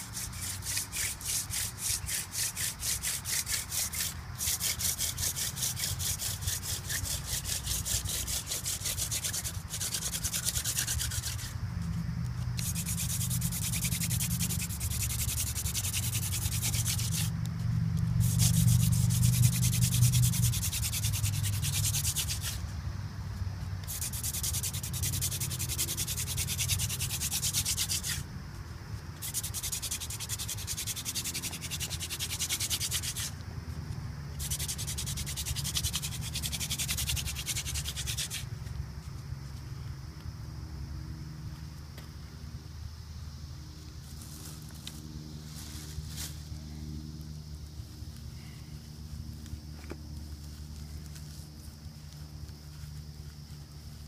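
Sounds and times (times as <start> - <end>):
wooden spindle grinding on board: 0.0 - 11.6, 12.6 - 17.3, 23.8 - 28.2.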